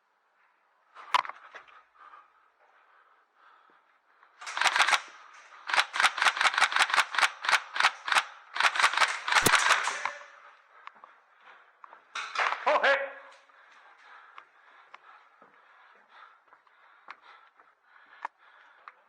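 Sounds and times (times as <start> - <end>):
airsoft gun firing rapid shots: 4.4 - 10.4
sharp click: 5.7 - 10.3.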